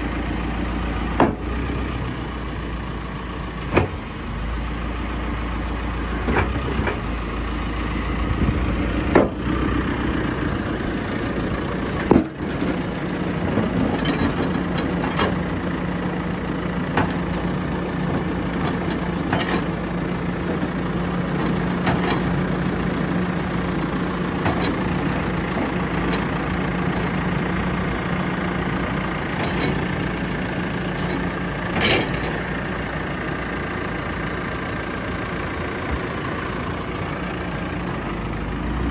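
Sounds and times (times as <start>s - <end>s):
diesel engine running: 0.0s - 38.9s
knocks and clunks: 1.1s - 1.6s, 3.6s - 4.2s, 6.1s - 7.1s, 8.3s - 9.7s, 10.4s - 32.6s.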